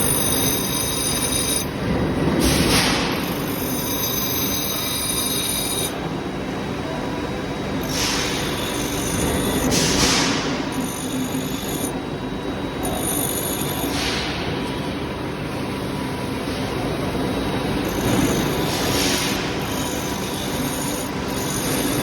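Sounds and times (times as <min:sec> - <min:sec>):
drill bit grinding on wheel: 0:00.0 - 0:01.8, 0:03.1 - 0:06.0, 0:07.8 - 0:09.8, 0:10.6 - 0:12.0, 0:12.7 - 0:14.1, 0:17.0 - 0:22.0.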